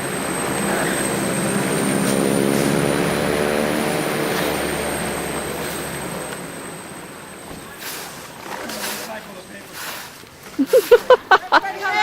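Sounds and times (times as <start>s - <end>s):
airplane engine drone: 0.0s - 8.4s.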